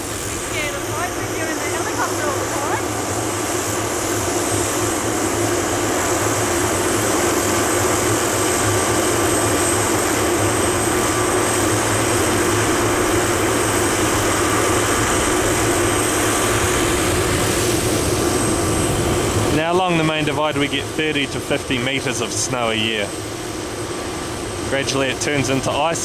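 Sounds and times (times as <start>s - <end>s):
helicopter engine running: 0.0s - 26.0s.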